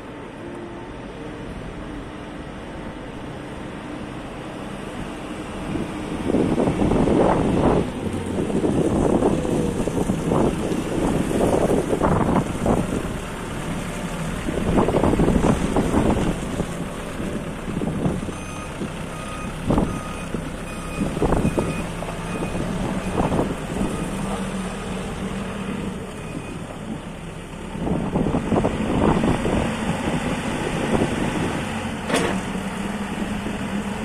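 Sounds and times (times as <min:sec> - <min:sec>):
diesel engine running: 0:00.0 - 0:34.0
reversing alarm beeping: 0:18.4 - 0:23.3.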